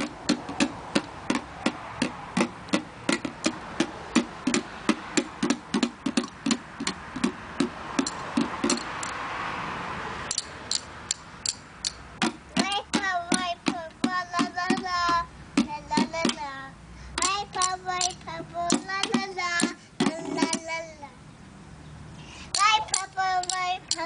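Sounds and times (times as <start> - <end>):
rhythmic ringing knocks: 0.0 - 9.2.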